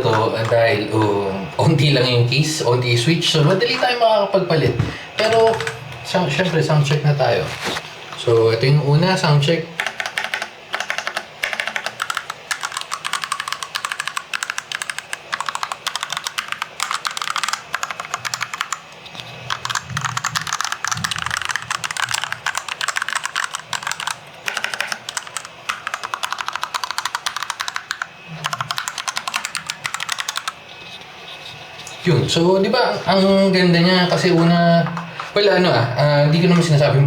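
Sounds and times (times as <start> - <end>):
mechanical keyboard typing: 5.2 - 5.8, 9.8 - 30.6.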